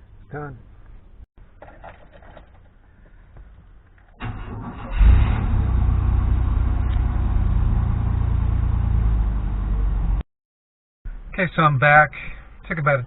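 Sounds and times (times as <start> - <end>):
car engine starting and rumbling: 4.1 - 10.2.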